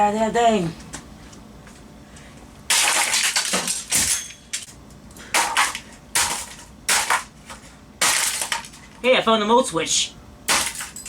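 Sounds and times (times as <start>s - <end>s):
plastic casing smashed apart: 2.7s - 4.7s, 5.3s - 7.3s, 8.0s - 8.9s, 10.5s - 11.0s.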